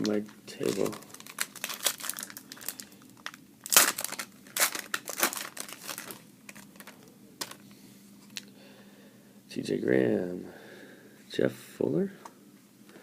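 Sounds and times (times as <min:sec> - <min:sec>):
plastic wrapper crinkling: 0:00.0 - 0:07.6.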